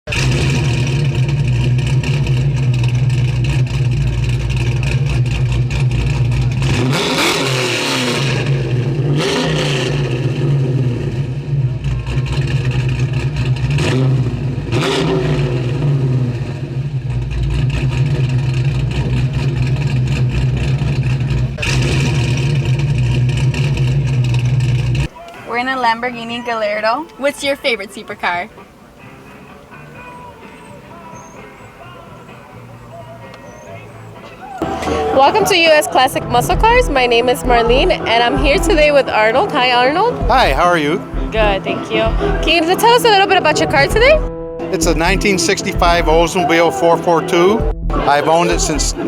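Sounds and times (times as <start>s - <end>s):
car engine idling and revving: 0.0s - 49.0s.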